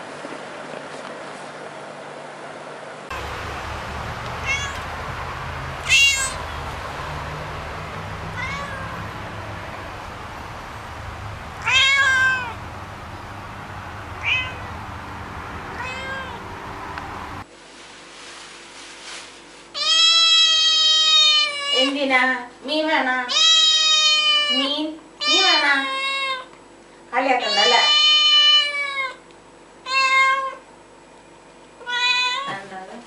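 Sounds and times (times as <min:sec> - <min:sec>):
cat meowing: 0:04.2 - 0:05.0, 0:05.8 - 0:06.7, 0:07.7 - 0:10.0, 0:11.2 - 0:12.6, 0:14.2 - 0:14.9, 0:15.7 - 0:16.5, 0:19.8 - 0:21.9, 0:23.3 - 0:26.5, 0:27.4 - 0:29.2, 0:29.8 - 0:30.6, 0:31.8 - 0:32.6.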